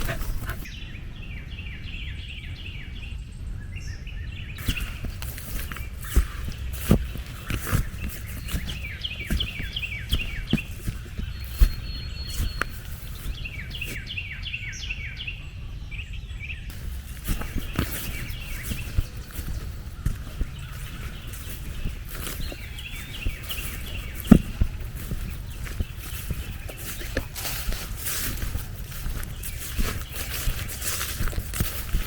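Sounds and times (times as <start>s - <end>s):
songbird chirping: 0.0s - 32.0s
soft thumps: 4.6s - 13.4s, 16.7s - 32.0s.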